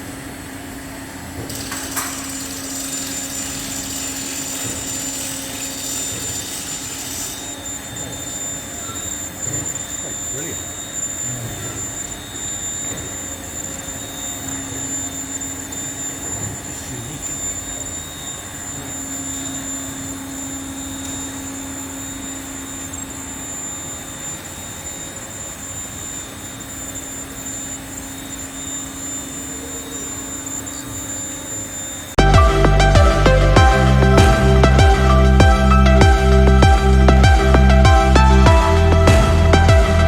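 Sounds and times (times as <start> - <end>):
mechanical hum: 0.0 - 40.0
thin high whine: 0.0 - 40.0
low drone: 32.2 - 40.0.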